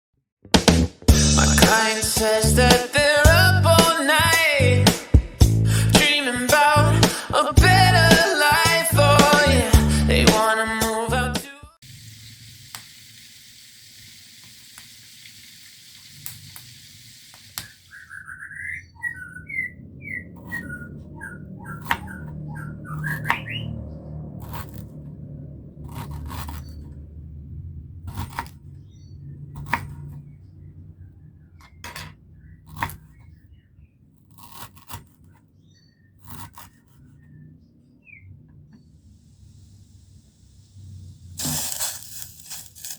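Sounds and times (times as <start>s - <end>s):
steady hiss: 11.8s - 17.9s, 39.0s - 42.9s
birds chirping: 17.4s - 24.4s, 28.7s - 34.1s, 37.0s - 39.2s
low rumble: 19.2s - 31.6s.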